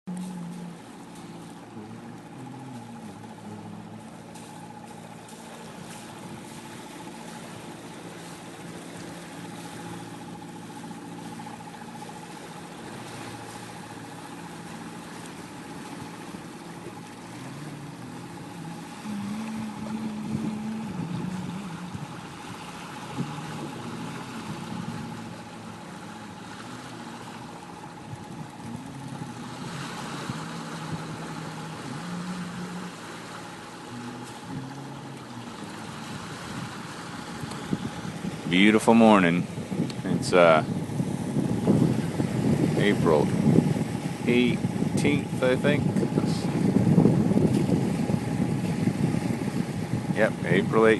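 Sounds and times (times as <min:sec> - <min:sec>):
wind and water wash: 0:00.0 - 0:50.9
high-pitched whine: 0:00.1 - 0:28.0.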